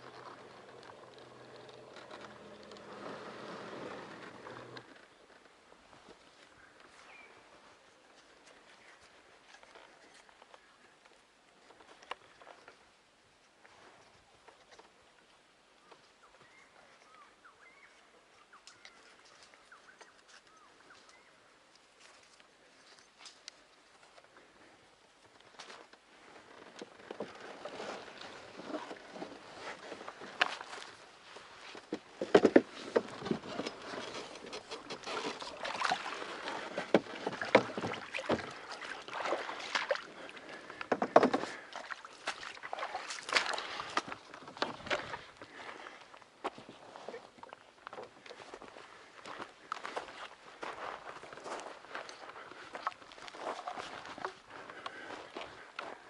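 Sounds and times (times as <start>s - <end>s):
small birds chirping: 15.8s - 21.7s
kayak and paddle knocking: 31.8s - 42.0s
water sloshing: 32.3s - 45.6s.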